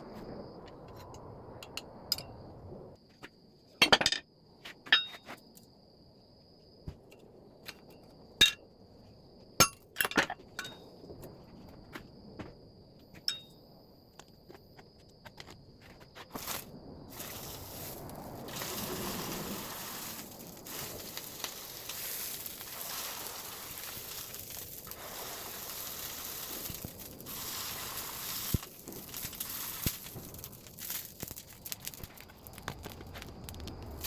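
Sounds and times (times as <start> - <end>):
hiss: 16.4 - 31.1.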